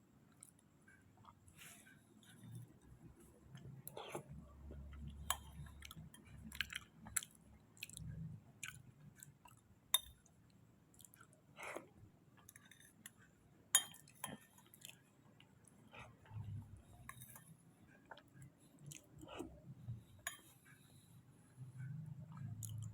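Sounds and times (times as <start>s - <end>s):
chewing and wet mouth smacks: 3.6s - 9.6s, 18.0s - 19.6s, 22.3s - 22.9s.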